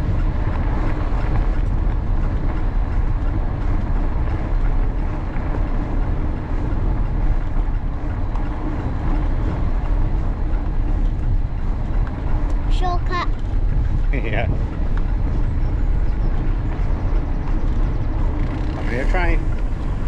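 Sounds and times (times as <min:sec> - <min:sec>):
wind buffeting microphone: 0:00.0 - 0:20.0
bike tyres rolling on mud: 0:13.7 - 0:20.0.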